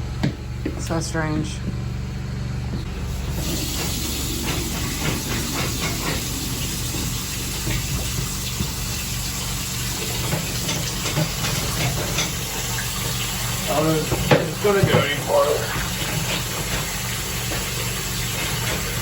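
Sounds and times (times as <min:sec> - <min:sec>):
low hum: 0:00.8 - 0:12.6
rushing water hiss: 0:03.0 - 0:11.2.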